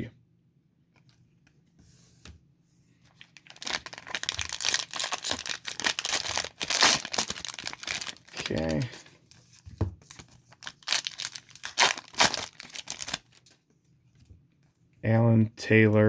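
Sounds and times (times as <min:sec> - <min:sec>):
wrapper tearing and crinkling: 0:03.2 - 0:09.5, 0:10.1 - 0:13.6.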